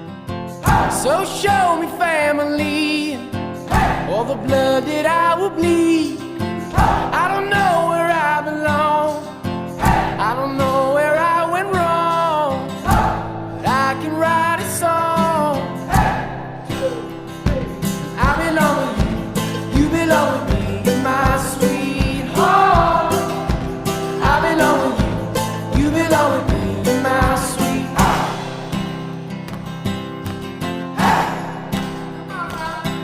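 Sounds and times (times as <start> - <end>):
strummed acoustic guitar: 0.0 - 33.0
person singing: 0.6 - 9.2, 9.8 - 28.5, 31.0 - 31.7
steady beat: 16.7 - 28.8.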